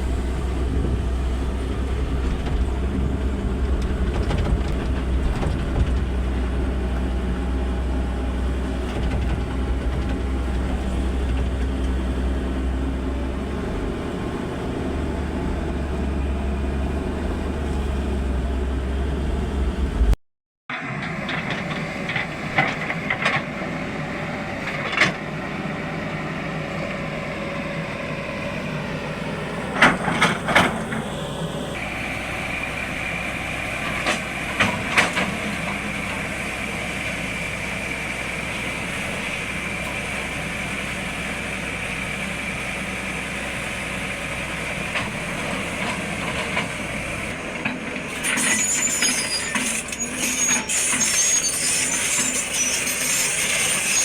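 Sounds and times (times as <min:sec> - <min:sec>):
excavator diesel engine running: 0:00.0 - 0:54.0.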